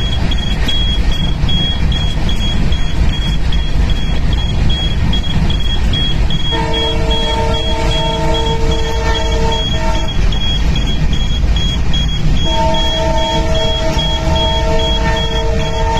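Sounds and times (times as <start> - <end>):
high beeps: 0.0 - 15.9
low rumble: 0.0 - 15.9
multi-tone train horn: 6.5 - 10.3, 12.4 - 15.9.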